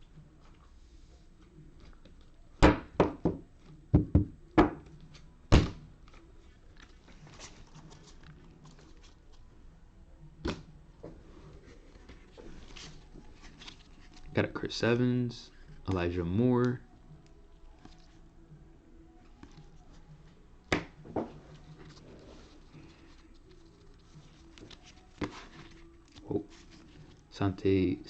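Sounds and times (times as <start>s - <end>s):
faint handling noise: 6.0s - 9.7s, 10.4s - 27.4s.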